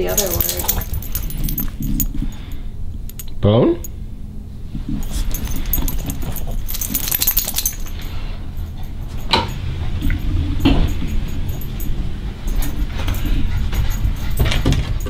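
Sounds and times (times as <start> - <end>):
metal collar tags jingling: 0.0 - 4.0, 4.9 - 15.0.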